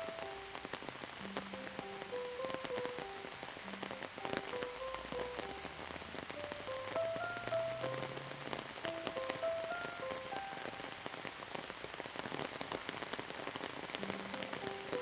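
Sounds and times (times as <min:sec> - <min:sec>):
soft slow melody: 0:00.0 - 0:11.8, 0:12.5 - 0:15.0
rain drops ticking: 0:00.0 - 0:15.0.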